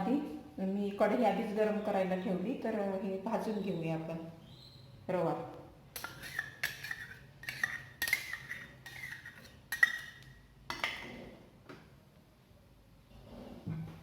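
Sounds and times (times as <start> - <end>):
metal spoon clinking on cookware: 6.0 - 11.0.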